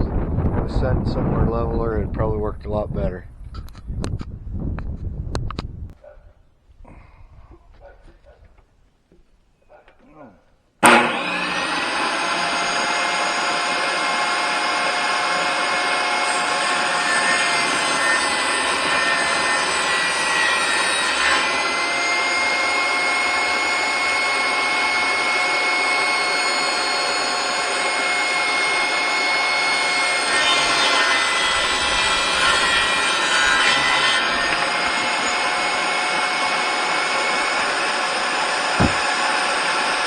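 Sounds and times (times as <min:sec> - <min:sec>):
saw blade cutting plywood: 0:10.8 - 0:40.0
table saw whining: 0:10.8 - 0:40.0.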